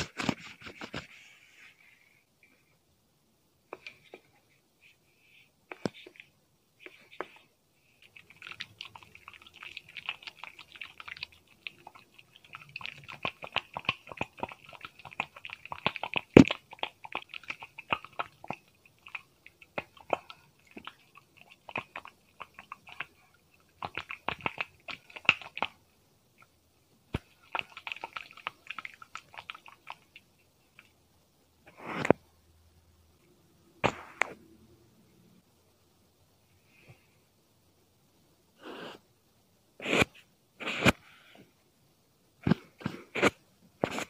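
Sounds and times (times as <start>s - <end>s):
crisp crackling and scratching: 0.0s - 1.7s.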